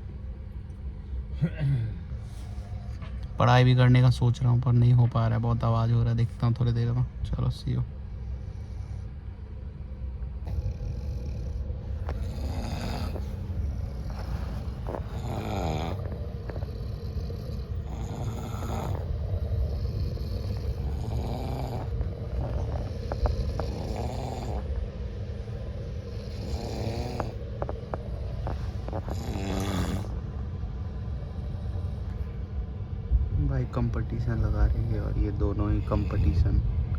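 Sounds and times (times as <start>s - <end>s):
train running rumble: 1.4s - 36.9s
people snoring loudly: 10.4s - 30.2s, 34.5s - 36.4s.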